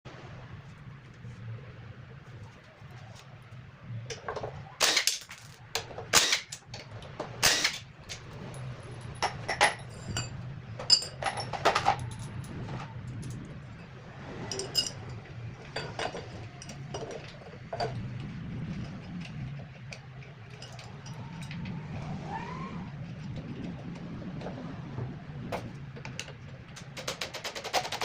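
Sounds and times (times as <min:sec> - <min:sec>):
low steady hum: 0:00.1 - 0:27.1
metal tools clinking: 0:04.2 - 0:18.0, 0:20.2 - 0:21.7.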